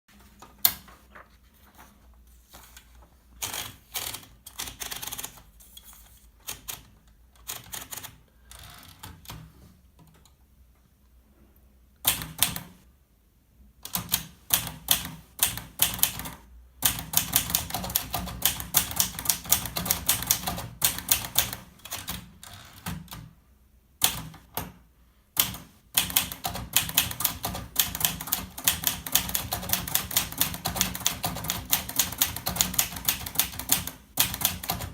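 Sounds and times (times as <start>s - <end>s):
typewriter typing: 2.6s - 9.5s, 12.1s - 12.8s, 13.9s - 23.3s, 24.0s - 24.7s, 25.4s - 34.9s.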